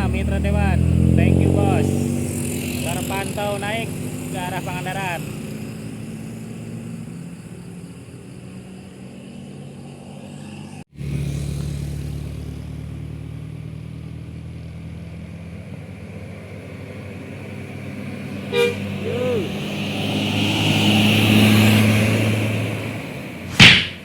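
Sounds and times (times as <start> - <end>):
heavy vehicle engine running: 0.0 - 8.8, 10.8 - 24.0
short loud horn: 18.5 - 18.8.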